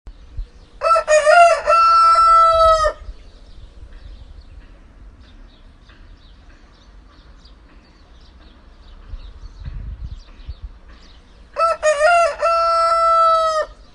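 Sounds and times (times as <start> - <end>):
rooster crowing: 0.8 - 3.0, 11.6 - 13.8.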